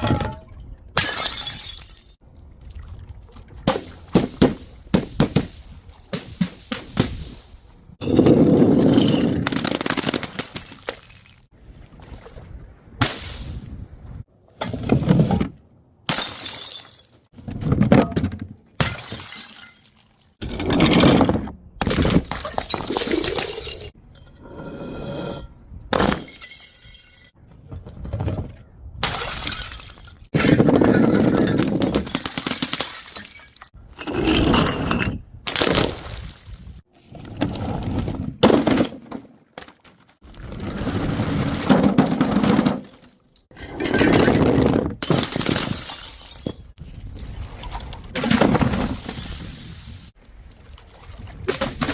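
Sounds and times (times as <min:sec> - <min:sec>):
glass bottles smashing: 0:01.0 - 0:02.2, 0:16.1 - 0:17.3, 0:18.8 - 0:20.4, 0:22.1 - 0:24.0, 0:26.0 - 0:27.4, 0:29.0 - 0:33.7, 0:45.1 - 0:46.8.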